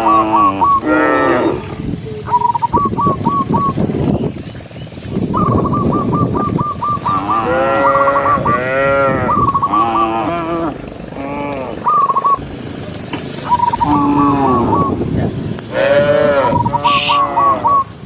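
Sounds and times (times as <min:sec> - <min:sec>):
cattle mooing: 0:00.0 - 0:01.8, 0:07.0 - 0:12.4, 0:13.7 - 0:15.0, 0:15.7 - 0:17.9
high warbling call: 0:00.0 - 0:03.8, 0:05.3 - 0:12.4, 0:13.4 - 0:15.2, 0:15.8 - 0:18.0
rough background noise: 0:00.0 - 0:18.0.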